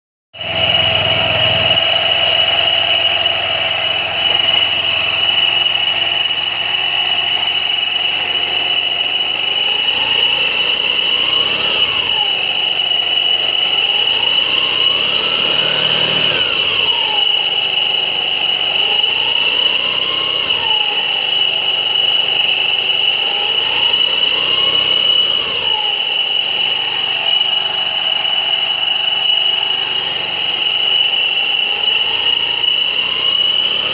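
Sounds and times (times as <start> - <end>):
motorcycle engine running: 0.4 - 8.4
high-pitched whine: 0.4 - 33.9
low tone rising: 0.4 - 33.9.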